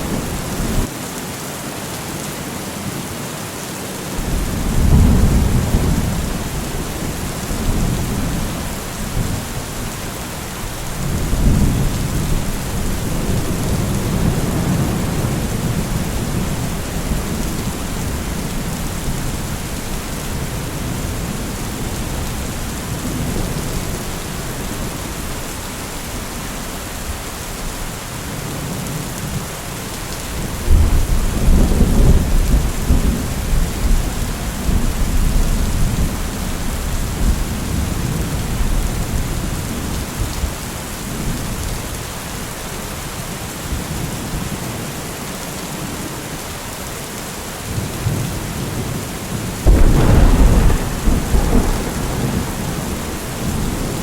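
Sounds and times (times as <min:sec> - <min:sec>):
heavy rain: 0:00.0 - 0:54.0
deep thunder rolling: 0:04.2 - 0:09.5, 0:49.6 - 0:54.0.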